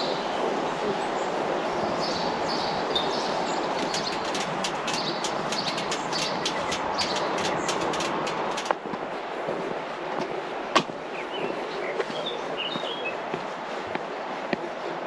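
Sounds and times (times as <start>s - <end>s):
steady background rush: 0.0s - 15.0s
small birds chirping: 0.8s - 8.8s, 10.8s - 15.0s
quick ticks: 3.7s - 8.8s.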